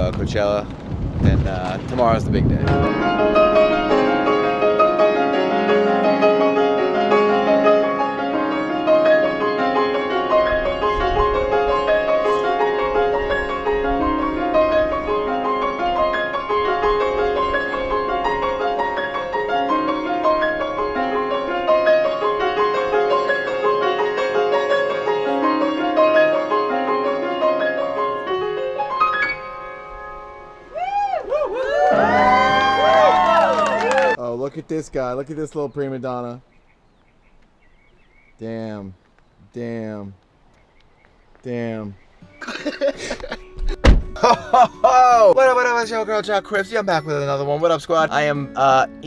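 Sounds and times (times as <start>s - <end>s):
piano music: 1.5s - 30.9s, 31.5s - 34.2s, 42.2s - 49.0s.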